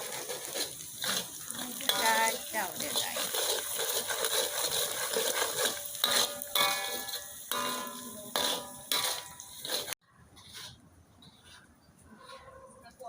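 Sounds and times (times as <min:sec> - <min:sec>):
sauce sizzling in hot oil: 0:00.0 - 0:10.0
metal spatula clanking on pan: 0:01.0 - 0:10.0.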